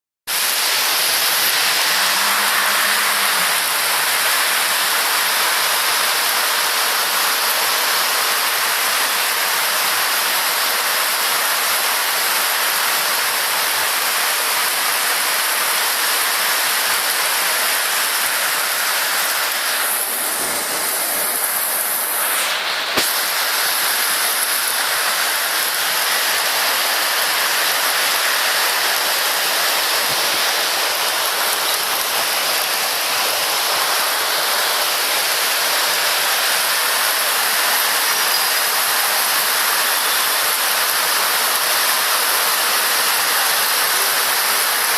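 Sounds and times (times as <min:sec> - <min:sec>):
heavy rain pouring: 0:00.3 - 0:44.9.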